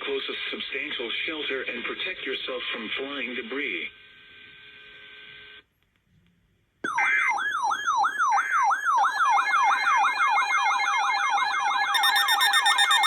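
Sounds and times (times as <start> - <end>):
faint radio hiss: 0.0 - 6.8
electronic siren alert tone: 6.9 - 13.0
high alarm tones: 6.9 - 13.0.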